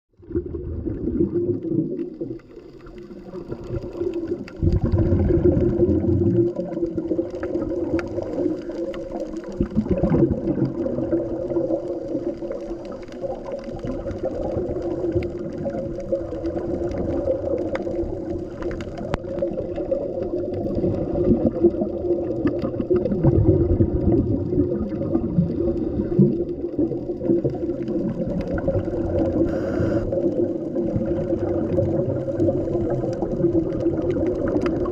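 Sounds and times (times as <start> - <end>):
regulator bubbling: 0.2 - 34.9
muffled underwater hum: 27.1 - 30.3.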